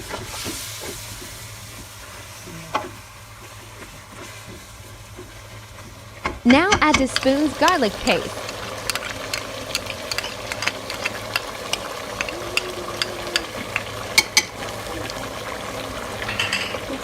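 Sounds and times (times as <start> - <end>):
curry sizzling in a pot: 0.0 - 17.0
spoon knocking against pot: 6.5 - 14.6.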